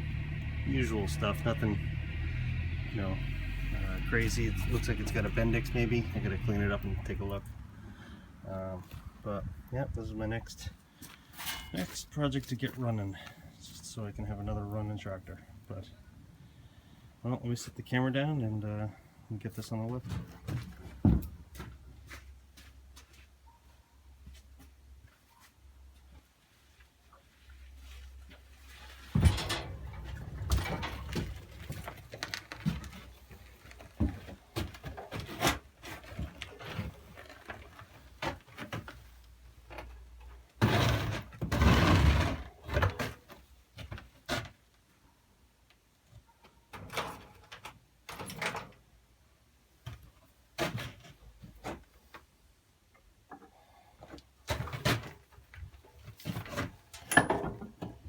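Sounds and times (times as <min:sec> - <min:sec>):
low rumble: 0:00.0 - 0:08.0, 0:29.2 - 0:32.0
metal scraping: 0:28.9 - 0:32.2
metal clanks and knocks: 0:29.1 - 0:33.0, 0:56.4 - 0:58.0.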